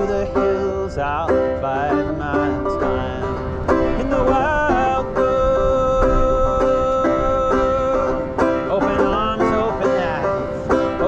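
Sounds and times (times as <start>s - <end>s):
banjo picking: 0.0s - 11.0s.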